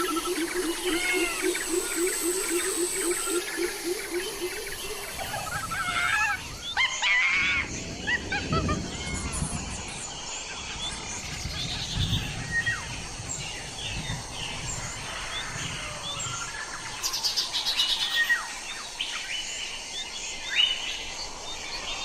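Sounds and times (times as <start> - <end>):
low repeated animal call: 0.0 - 9.3
bird calls whistling and chirping: 0.0 - 10.0.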